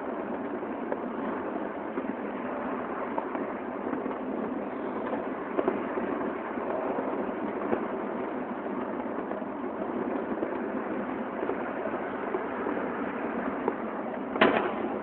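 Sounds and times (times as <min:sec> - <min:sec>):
fireworks crackling: 0:00.0 - 0:15.0
sharp firecracker cracks: 0:13.6 - 0:15.0.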